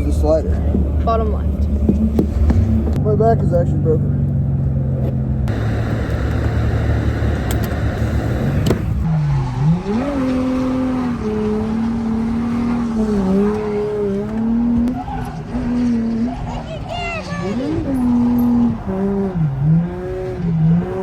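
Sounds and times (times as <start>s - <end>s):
car engine revving: 0.0s - 21.0s
click: 7.4s - 7.8s.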